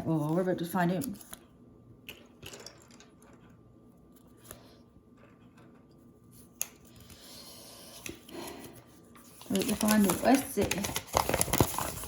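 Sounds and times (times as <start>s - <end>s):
plastic bag crinkling: 9.5s - 12.0s.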